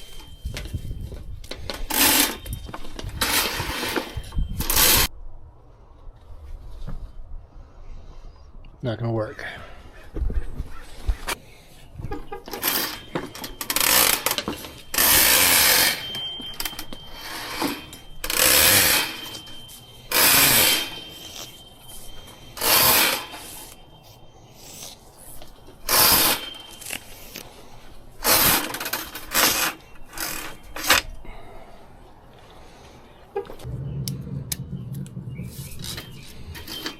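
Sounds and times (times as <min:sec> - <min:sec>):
power tool bursts: 0:12.5 - 0:21.6, 0:22.6 - 0:23.8, 0:25.8 - 0:26.9
faint high whine: 0:12.7 - 0:27.8.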